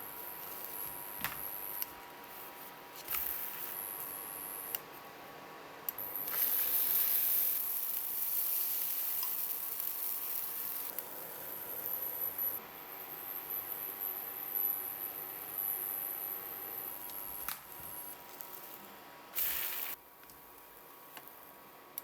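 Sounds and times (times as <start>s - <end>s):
food sizzling in a frying pan: 6.1s - 11.0s, 19.4s - 20.0s.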